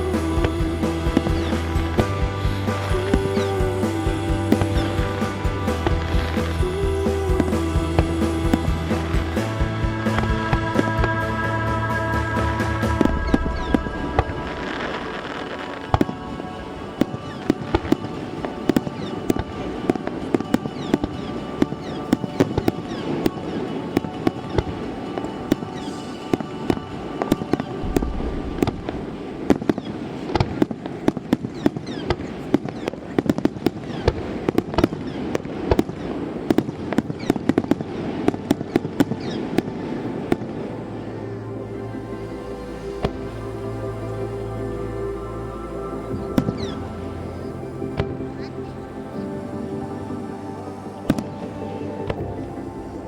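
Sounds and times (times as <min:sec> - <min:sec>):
fireworks crackling and popping: 0:00.0 - 0:40.8
faint music: 0:00.0 - 0:53.0
deep firework boom: 0:12.3 - 0:16.2, 0:27.8 - 0:30.7.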